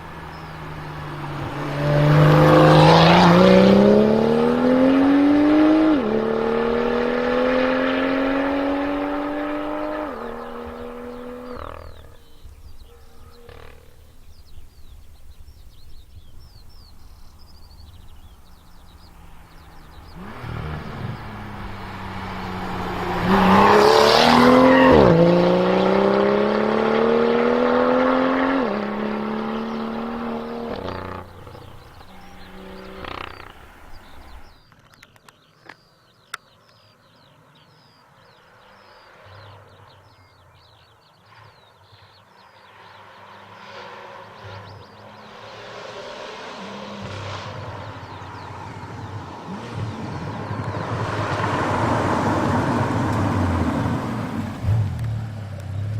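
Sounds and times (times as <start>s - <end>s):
car engine accelerating hard: 0.0s - 12.9s, 17.6s - 34.6s, 42.6s - 55.9s
car engine revving: 0.0s - 14.9s, 16.0s - 34.6s, 43.1s - 55.9s.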